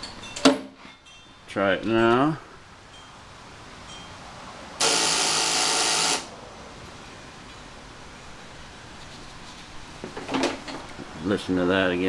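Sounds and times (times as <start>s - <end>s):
starter relay chattering: 4.8s - 6.3s.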